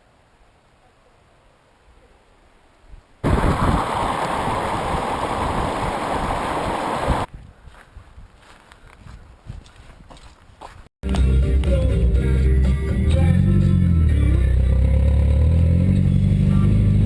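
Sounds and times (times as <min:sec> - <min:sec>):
rushing stream water: 0:03.2 - 0:07.3.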